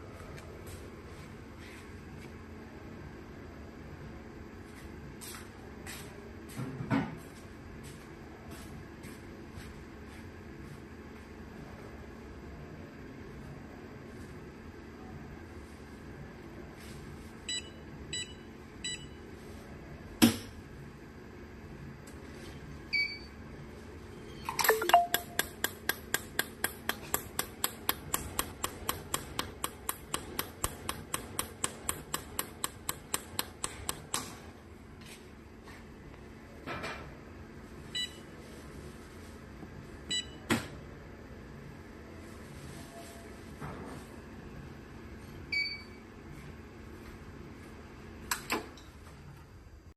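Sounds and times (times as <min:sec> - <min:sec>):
short electronic beeps: 0:24.5 - 0:25.4.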